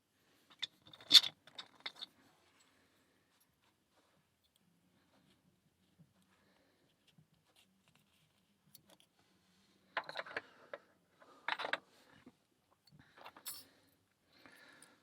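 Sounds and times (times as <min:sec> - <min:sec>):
metal lock parts clicking: 0:00.6 - 0:02.1.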